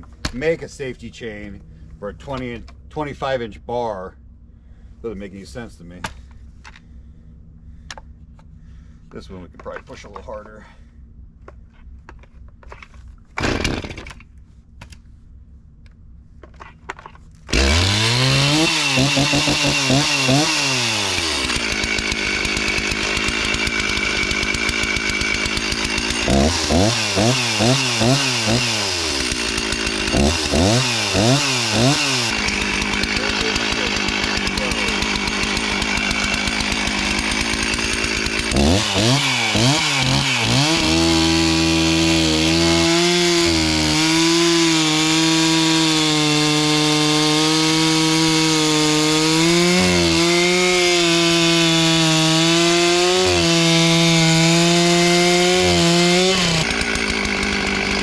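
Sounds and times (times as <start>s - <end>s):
chainsaw cutting wood: 12.2s - 14.3s, 16.6s - 58.0s
chainsaw revving: 13.4s - 14.2s, 17.5s - 58.0s.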